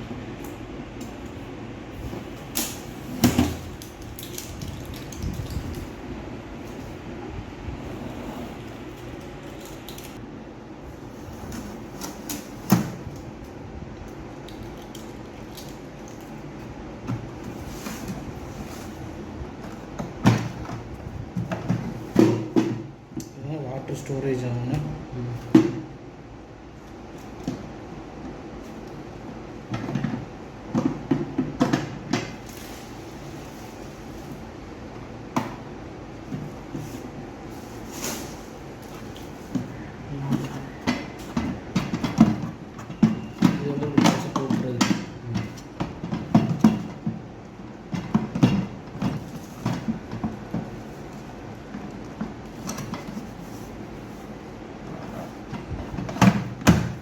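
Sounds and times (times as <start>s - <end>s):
knocks and clunks of handling: 17.0s - 23.4s, 29.6s - 32.6s, 35.3s - 57.0s
plastic appliance knocks and clunks: 19.9s - 22.9s.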